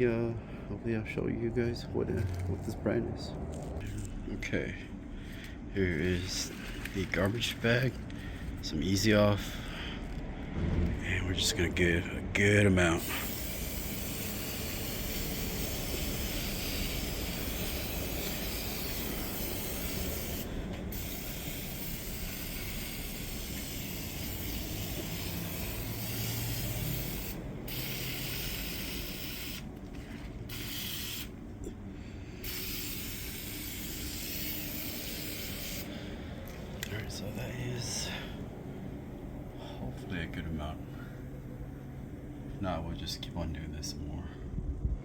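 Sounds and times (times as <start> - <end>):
aerosol can spraying: 13.0 - 29.7, 30.4 - 31.4, 32.4 - 35.9.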